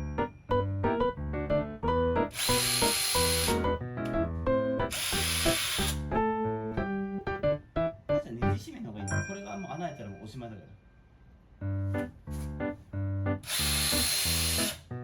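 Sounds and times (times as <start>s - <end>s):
background music: 0.0s - 10.6s, 11.6s - 14.9s
power drill running: 2.3s - 3.6s, 4.9s - 6.0s, 13.4s - 14.9s.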